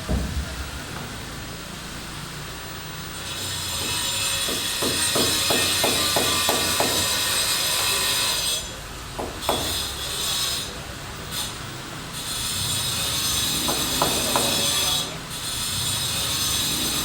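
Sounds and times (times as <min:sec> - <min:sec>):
hammering knocks: 0:00.0 - 0:01.7, 0:03.7 - 0:07.4, 0:09.2 - 0:10.1, 0:13.5 - 0:15.0
loud high hiss: 0:00.0 - 0:06.6.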